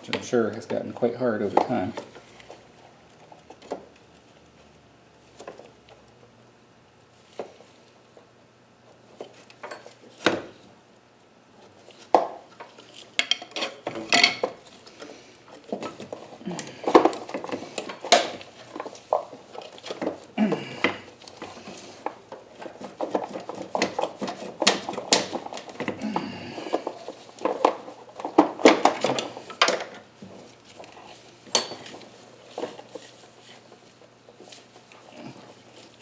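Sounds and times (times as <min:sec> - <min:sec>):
hand tools clinking and knocking: 0:12.5 - 0:30.1, 0:30.8 - 0:33.8.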